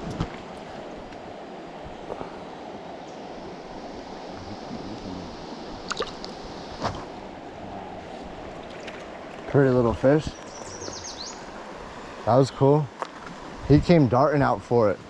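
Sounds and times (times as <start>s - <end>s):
stream flowing over rocks: 0.0s - 15.0s.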